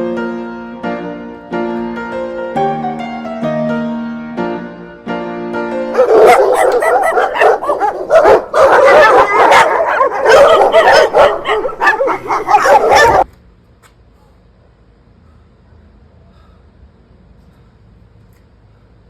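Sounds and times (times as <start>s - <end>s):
dogs barking and yipping: 5.9s - 13.3s.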